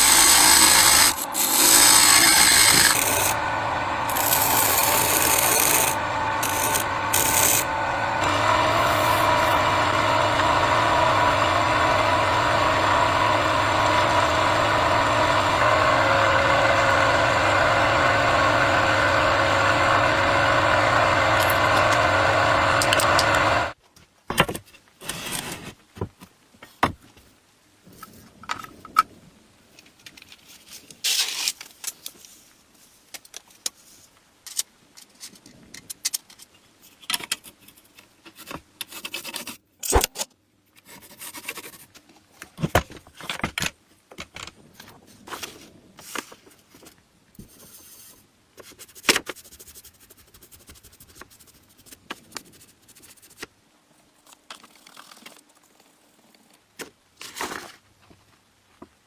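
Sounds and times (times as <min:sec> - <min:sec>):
metal scraping: 0:00.0 - 0:23.8.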